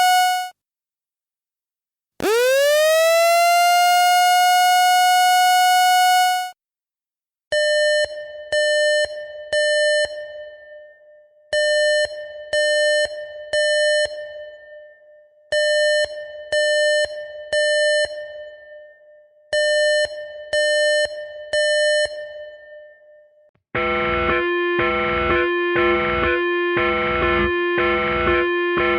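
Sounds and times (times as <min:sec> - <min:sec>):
steady siren tone: 0:02.2 - 0:06.5, 0:23.8 - 0:28.9.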